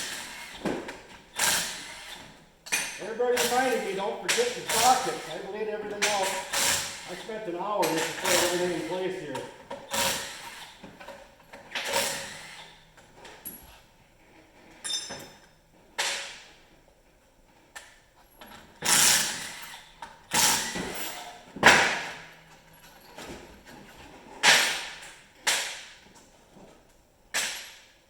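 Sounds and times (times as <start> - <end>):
power tool bursts and clanks: 0.0 - 13.0, 18.5 - 23.0, 24.4 - 25.9
metallic ring: 14.8 - 15.4.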